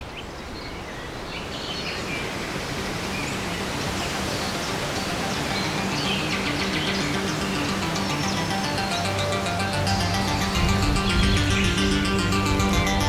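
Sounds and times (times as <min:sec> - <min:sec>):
small birds chirping: 0:00.0 - 0:13.0
woodland noise haze: 0:02.2 - 0:13.0
faint low music notes: 0:02.7 - 0:13.0.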